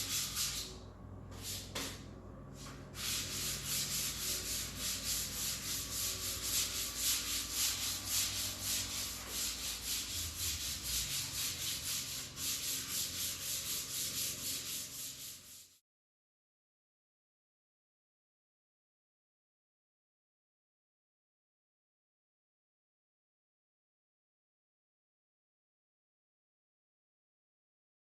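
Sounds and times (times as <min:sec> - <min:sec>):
sandpaper rubbing back and forth: 0:00.0 - 0:00.8, 0:01.4 - 0:02.0, 0:02.6 - 0:15.8.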